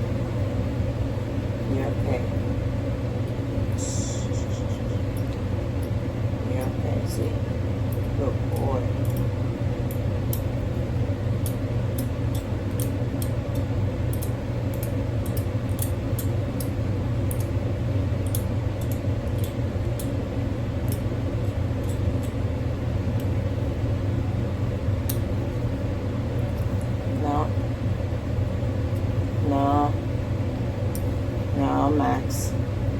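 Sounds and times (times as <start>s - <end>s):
low machine hum: 0.0s - 32.9s
light sharp clicks: 7.9s - 10.5s, 11.4s - 17.6s, 18.2s - 20.2s.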